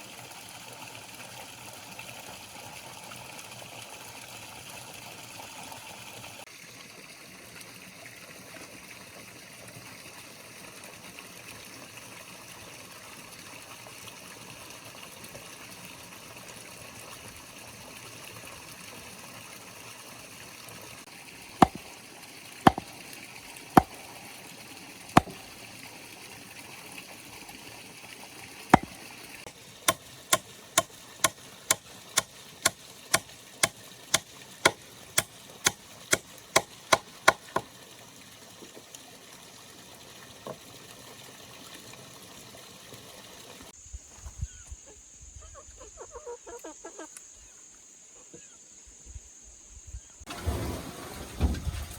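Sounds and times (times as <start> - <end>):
running water trickling: 0.0 - 43.8
chopping strikes into wood: 21.6 - 22.0, 22.7 - 23.0, 23.8 - 24.2, 25.2 - 25.6, 28.8 - 29.0, 29.9 - 37.7.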